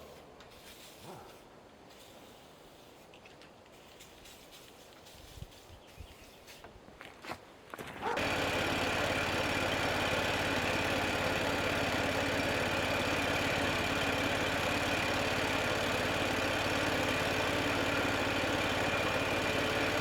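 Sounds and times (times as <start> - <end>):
sawmill engine running: 8.1 - 20.0.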